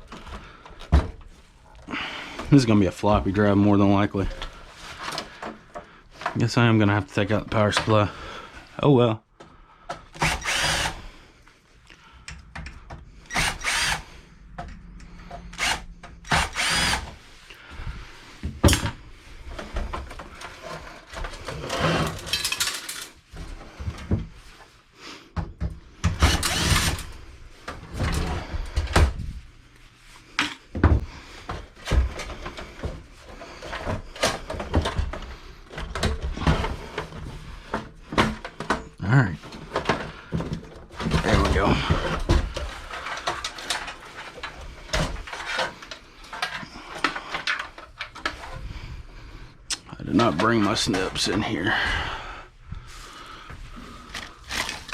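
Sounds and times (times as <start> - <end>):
power drill bursts: 10.2 - 11.0, 13.2 - 14.2, 15.5 - 17.2, 26.1 - 27.1.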